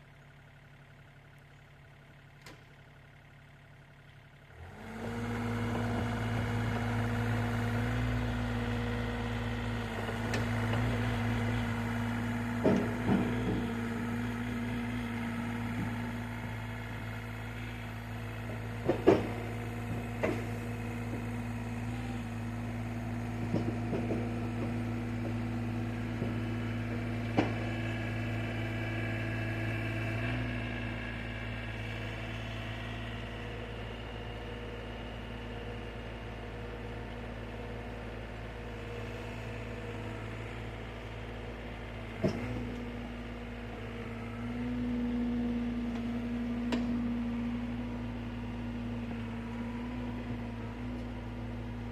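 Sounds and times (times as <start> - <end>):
heavy engine idling: 0.0 - 51.9.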